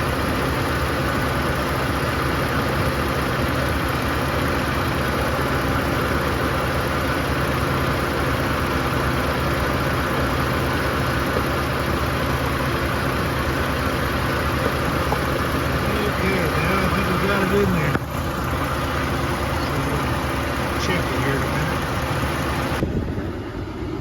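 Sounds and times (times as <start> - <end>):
air conditioning running: 0.0 - 24.0
car engine idling: 0.0 - 24.0.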